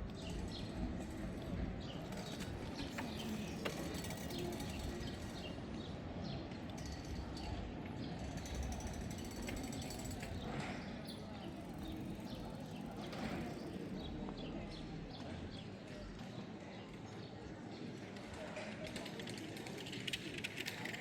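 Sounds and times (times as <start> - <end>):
street hum: 0.0 - 16.1.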